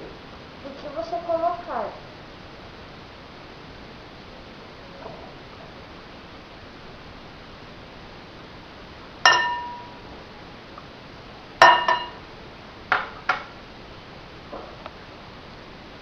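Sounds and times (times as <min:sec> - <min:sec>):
utensil clinking against a dish: 0:09.3 - 0:10.0, 0:11.6 - 0:12.2.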